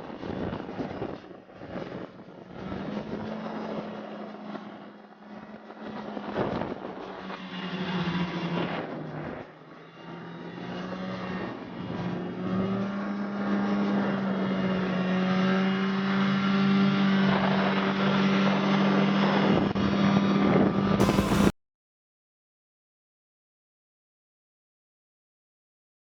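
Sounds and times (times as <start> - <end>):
vehicle engine running: 21.0 - 21.5.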